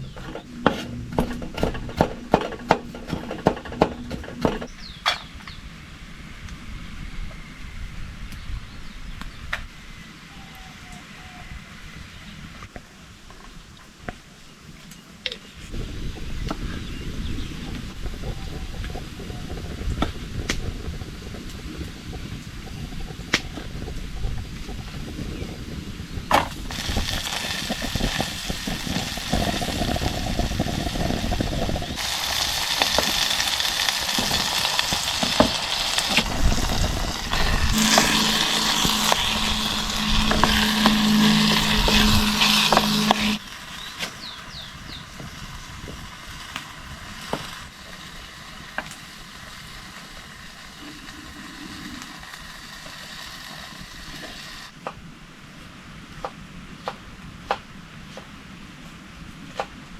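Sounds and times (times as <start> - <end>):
stirring knocks: 0.0 - 4.7, 32.0 - 43.4
food sizzling in a pan: 26.6 - 54.7.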